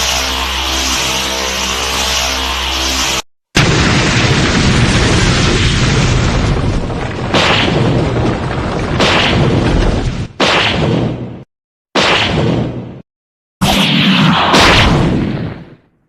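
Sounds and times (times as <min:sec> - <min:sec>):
rumbling roar of explosions: 0:00.0 - 0:11.4
booms: 0:03.6 - 0:13.0, 0:13.6 - 0:15.9.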